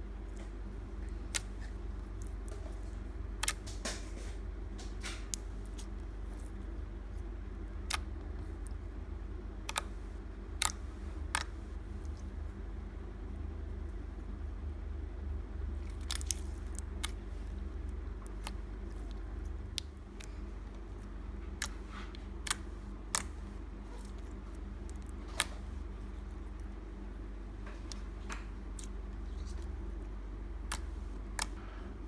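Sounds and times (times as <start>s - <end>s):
steady low hum: 0.0s - 32.0s
slime popping and clicking: 16.0s - 17.2s, 30.6s - 31.6s.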